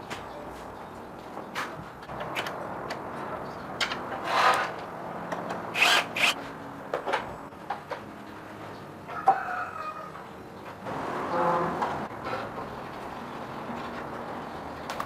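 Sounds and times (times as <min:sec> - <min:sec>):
tool scraping: 0:04.2 - 0:04.8, 0:05.7 - 0:06.4.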